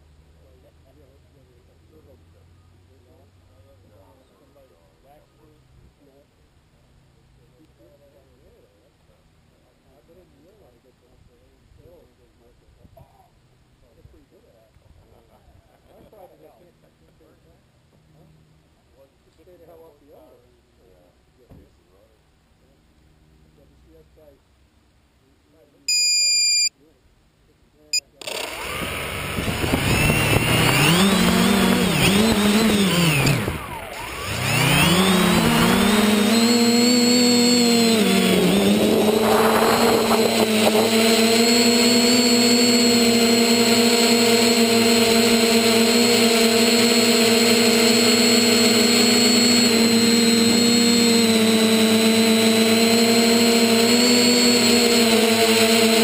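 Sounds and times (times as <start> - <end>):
model aircraft motor and propeller: 28.0 - 56.0.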